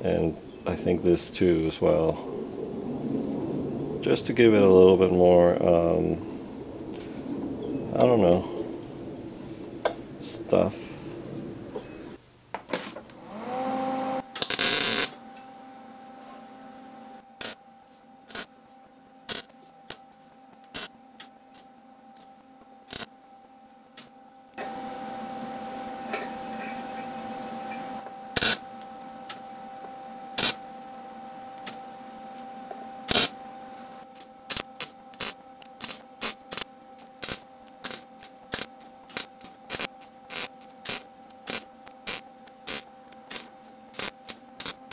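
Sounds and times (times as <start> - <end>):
welder humming: 0.0 - 12.2, 13.0 - 44.9
welding bursts: 13.7 - 15.2, 17.4 - 17.6, 18.2 - 18.5, 19.3 - 20.0, 20.6 - 23.1, 28.3 - 28.7, 30.4 - 30.6, 33.1 - 33.4, 34.0 - 44.9.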